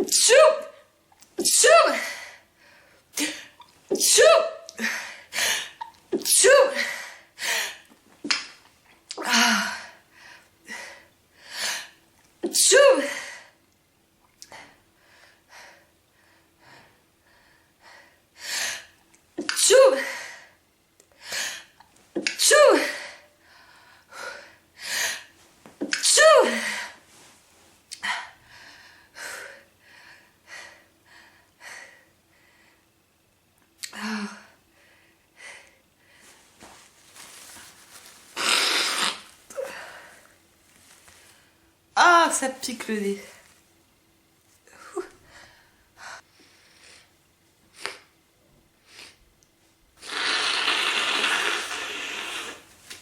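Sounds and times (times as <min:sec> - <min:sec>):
woman sneezing: 0:00.0 - 0:00.8, 0:01.4 - 0:02.2, 0:03.2 - 0:04.8, 0:05.8 - 0:07.0, 0:12.4 - 0:13.2, 0:19.4 - 0:20.1, 0:22.2 - 0:23.0, 0:25.8 - 0:26.8, 0:38.4 - 0:39.7
woman breathing and sniffing: 0:35.0 - 0:41.6, 0:44.6 - 0:48.1.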